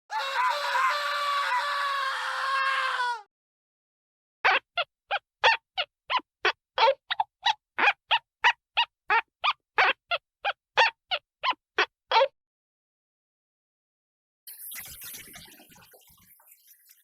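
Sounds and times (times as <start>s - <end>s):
cartoon honk-like calls: 4.4s - 12.3s.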